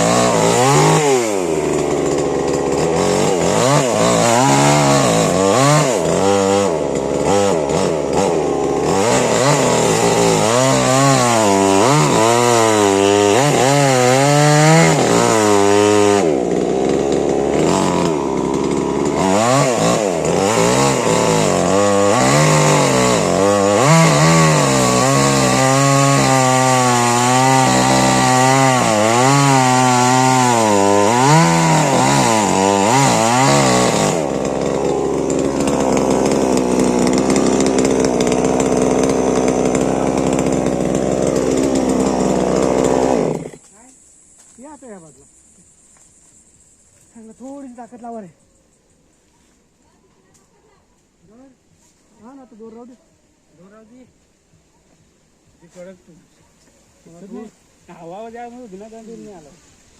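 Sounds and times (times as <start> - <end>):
chainsaw cutting wood: 0.0 - 43.9.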